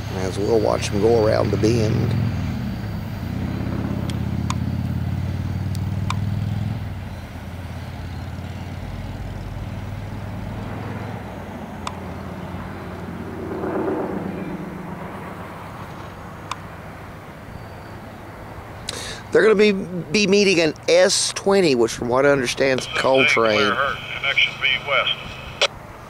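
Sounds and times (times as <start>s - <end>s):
low vehicle rumble: 0.0s - 26.0s
sharp ticks: 3.3s - 4.9s, 5.6s - 6.3s.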